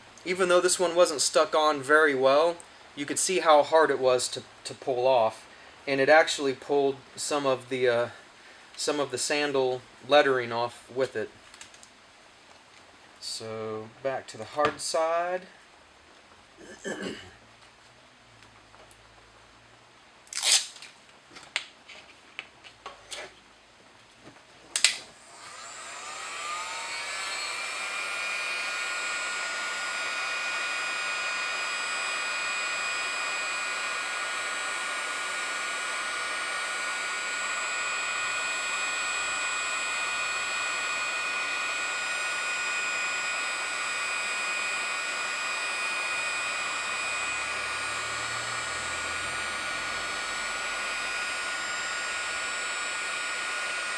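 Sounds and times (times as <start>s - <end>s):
heat gun fan blowing: 0.0s - 10.3s, 24.8s - 53.9s.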